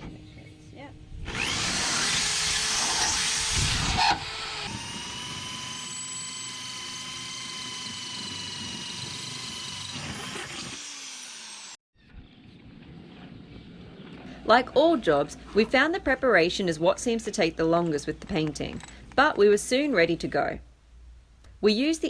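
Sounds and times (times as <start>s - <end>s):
electric power tool running: 1.2s - 11.8s.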